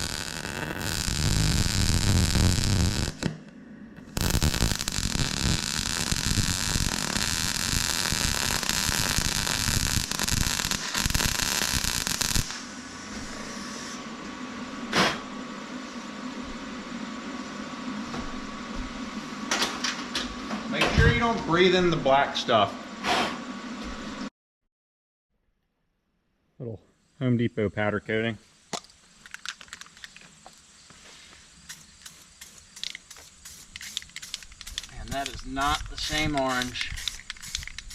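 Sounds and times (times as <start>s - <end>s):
welding arc crackling: 0.0s - 12.8s, 31.6s - 37.9s
faint hiss: 26.6s - 37.9s.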